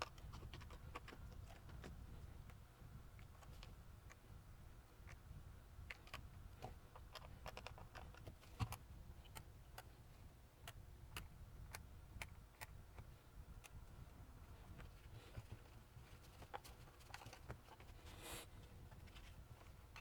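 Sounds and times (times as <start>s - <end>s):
small plastic and metal parts clicking: 5.9s - 9.9s.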